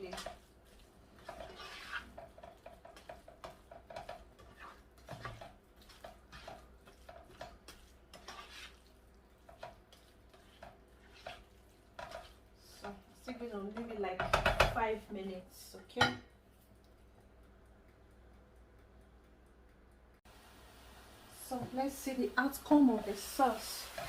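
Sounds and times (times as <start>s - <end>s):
spoon scraping cooking pot: 0.0s - 13.1s.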